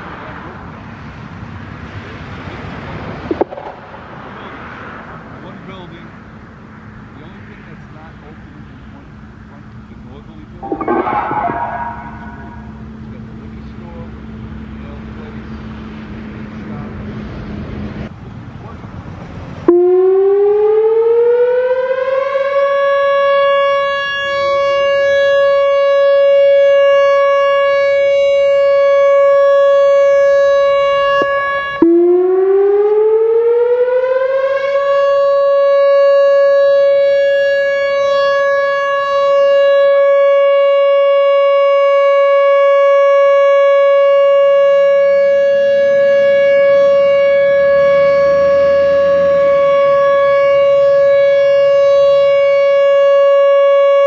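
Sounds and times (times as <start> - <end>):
warning siren winding up: 10.5 - 14.7, 19.7 - 54.0.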